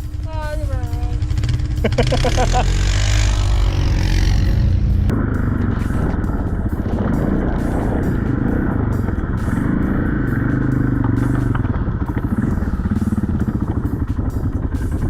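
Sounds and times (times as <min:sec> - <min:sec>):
dirt bike engine revving: 0:00.0 - 0:15.0.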